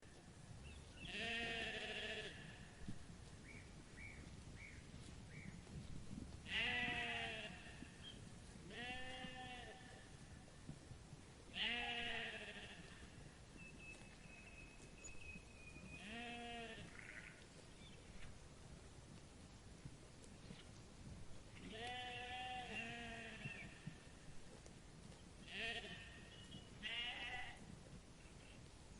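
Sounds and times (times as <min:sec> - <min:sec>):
sheep bleating: 0:01.0 - 0:02.7, 0:06.5 - 0:07.8, 0:08.7 - 0:10.0, 0:11.6 - 0:13.1, 0:16.0 - 0:17.4, 0:21.7 - 0:23.7, 0:25.4 - 0:27.6.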